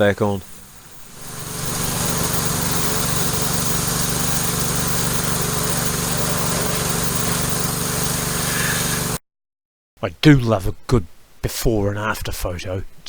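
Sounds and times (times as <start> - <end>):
pressure washer motor hum: 0.0 - 9.2
water jet spray hiss: 0.0 - 9.2.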